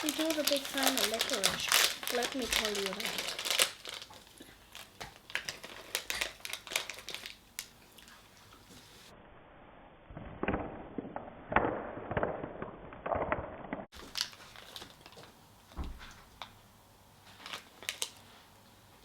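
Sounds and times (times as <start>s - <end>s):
plastic wrapper crinkling: 0.0s - 8.2s, 14.0s - 15.3s, 17.3s - 18.4s.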